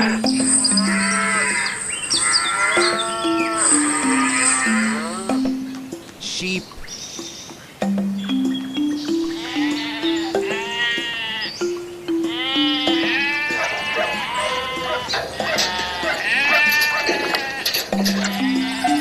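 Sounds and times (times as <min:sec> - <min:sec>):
plucked melody background music: 0:00.0 - 0:19.0
sheep bleating: 0:00.8 - 0:05.3, 0:09.3 - 0:11.6, 0:12.2 - 0:19.0.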